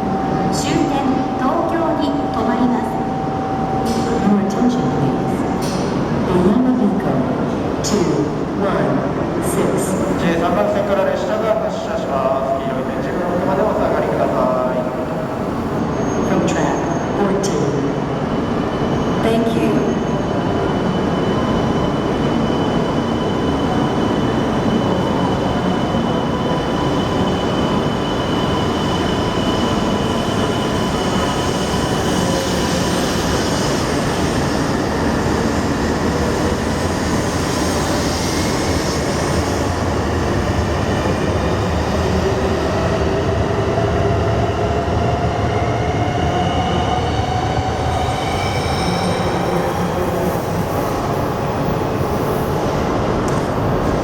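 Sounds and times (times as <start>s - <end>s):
train pulling out: 19.9s - 54.0s.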